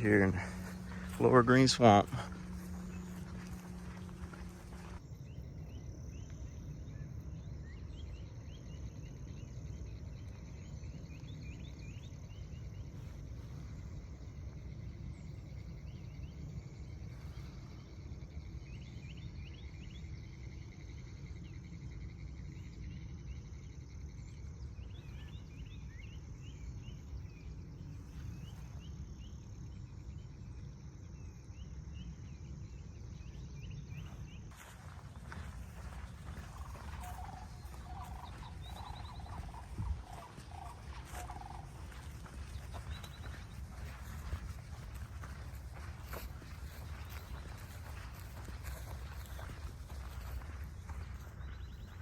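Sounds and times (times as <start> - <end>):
deep steady rumble: 0.0 - 52.0
insect chorus drone: 0.0 - 52.0
rapid bird chirps: 0.0 - 52.0.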